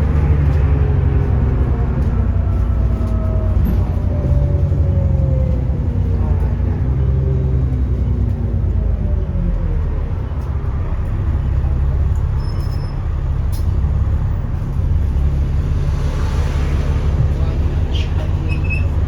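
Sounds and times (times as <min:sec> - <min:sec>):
bus engine running: 0:00.0 - 0:19.0.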